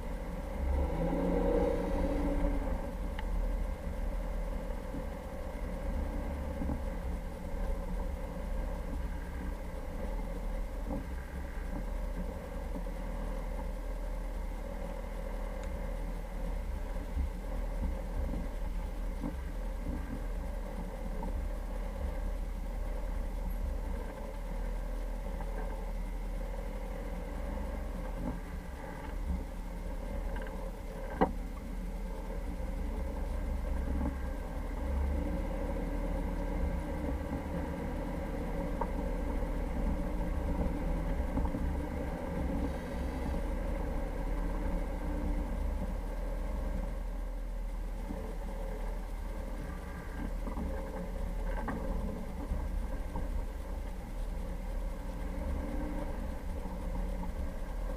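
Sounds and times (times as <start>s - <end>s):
car engine rumbling: 0.0s - 57.9s.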